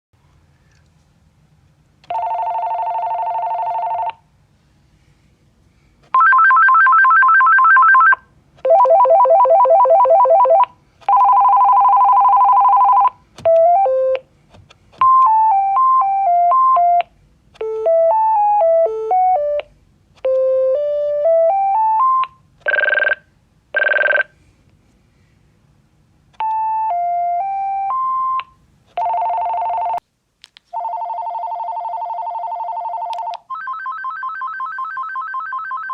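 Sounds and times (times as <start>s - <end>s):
cordless telephone ringing: 2.1s - 4.2s, 6.2s - 14.1s, 21.2s - 24.3s, 29.0s - 30.0s, 30.8s - 35.9s.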